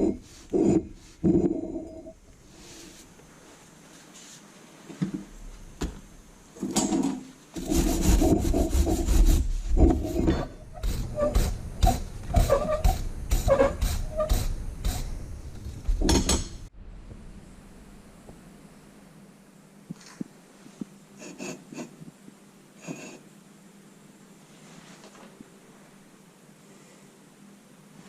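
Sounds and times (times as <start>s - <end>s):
rubbing and scraping on metal: 7.6s - 15.1s.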